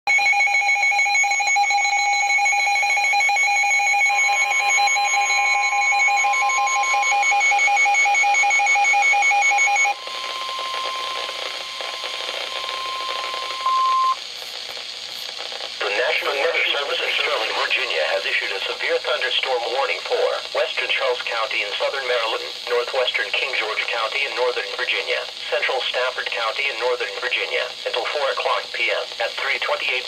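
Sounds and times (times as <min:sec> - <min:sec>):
rapid electronic alarm beeping: 0:00.1 - 0:14.2
steady warning alarm tone: 0:00.1 - 0:14.2
radio hiss: 0:09.8 - 0:30.0.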